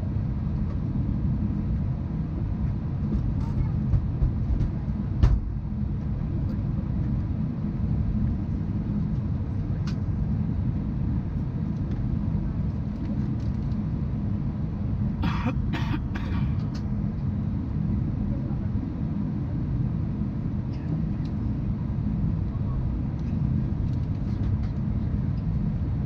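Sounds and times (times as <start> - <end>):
cabin ventilation low rumble: 0.0 - 26.0
person coughing: 15.2 - 16.6.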